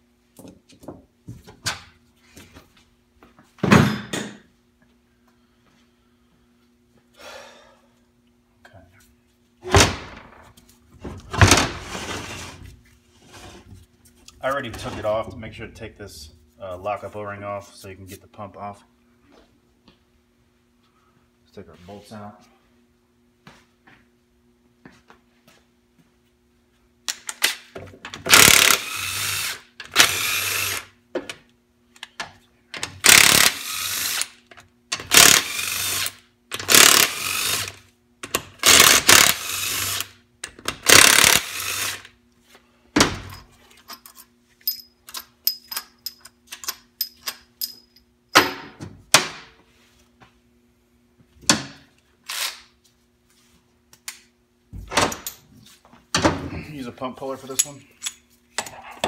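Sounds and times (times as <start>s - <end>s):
power tool spinning bolts: 28.3s - 30.9s, 33.0s - 34.4s, 35.0s - 42.1s
metallic clicks and clinks: 43.8s - 48.1s.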